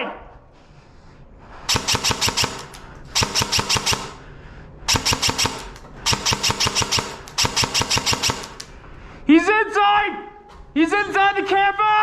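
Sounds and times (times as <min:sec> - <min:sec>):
airsoft rifle firing bursts: 0:01.7 - 0:04.3, 0:04.9 - 0:08.8.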